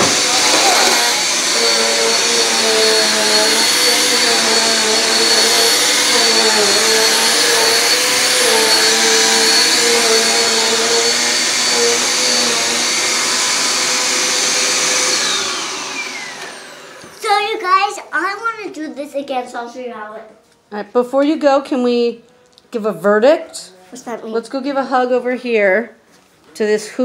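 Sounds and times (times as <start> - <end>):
vacuum cleaner running: 0.0 - 17.9.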